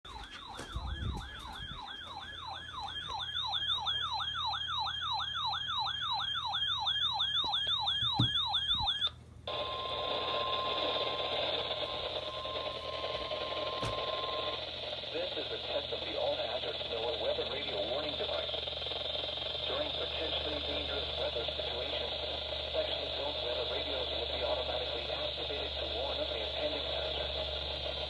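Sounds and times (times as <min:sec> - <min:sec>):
steady warning alarm tone: 0:00.0 - 0:28.0
electronic warbling siren: 0:00.1 - 0:28.0
radio hiss: 0:09.5 - 0:28.0.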